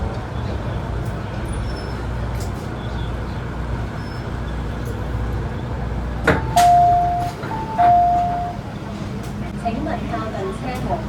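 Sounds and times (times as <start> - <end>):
train rumble: 0.0 - 11.0
two-note door chime: 6.4 - 8.6.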